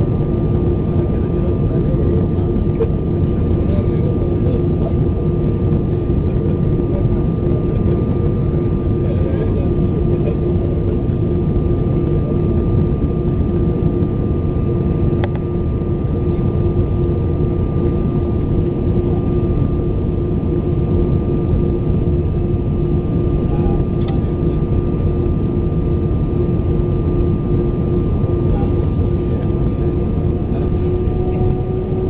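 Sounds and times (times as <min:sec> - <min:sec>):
airplane cabin engine rumble: 0:00.0 - 0:32.0
steady hum: 0:00.0 - 0:32.0.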